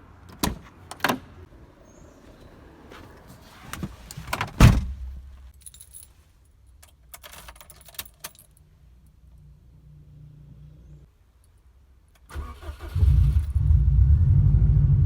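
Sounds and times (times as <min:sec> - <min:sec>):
car keys jangling: 0:05.5 - 0:08.6.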